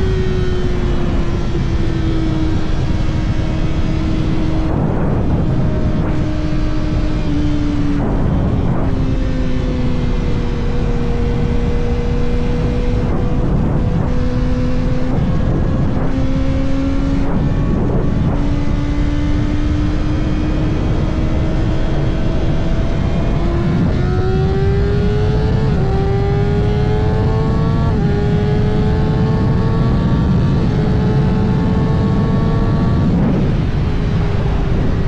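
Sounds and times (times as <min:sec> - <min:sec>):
heavy wind rush: 0:00.0 - 0:35.0
motorcycle engine running: 0:00.0 - 0:35.0.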